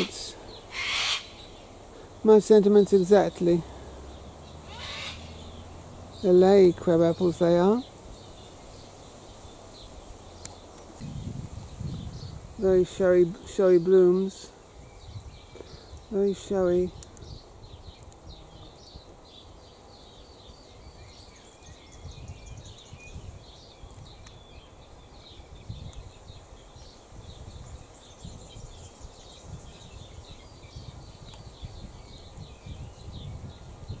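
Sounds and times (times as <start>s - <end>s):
small birds chirping: 0.0s - 34.0s
wind buffeting microphone: 11.0s - 13.3s, 14.7s - 19.1s, 20.5s - 34.0s.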